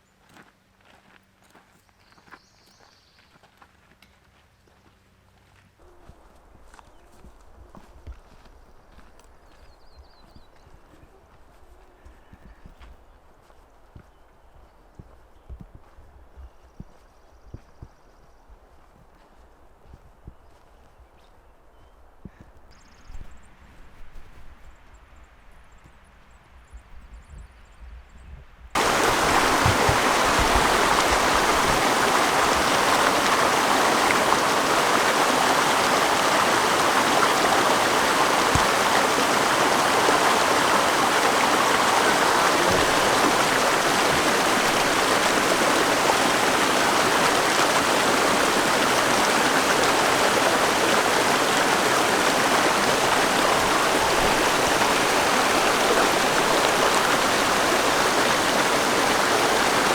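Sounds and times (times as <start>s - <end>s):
creek water rushing: 28.8s - 59.9s.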